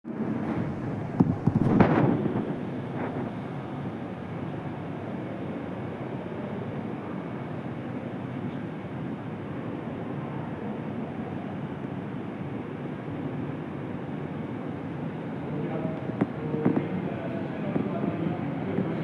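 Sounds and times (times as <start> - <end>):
steam boiler and turbine roar: 0.1 - 19.0
loud clatter: 0.4 - 3.6.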